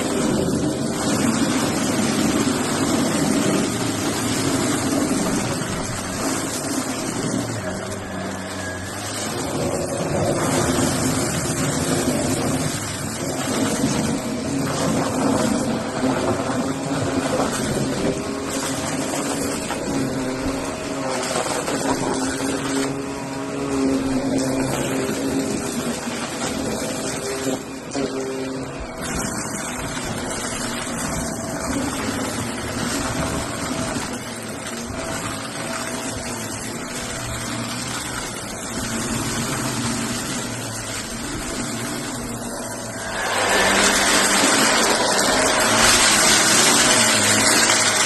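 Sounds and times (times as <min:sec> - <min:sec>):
vacuum cleaner running: 0:00.0 - 0:48.0.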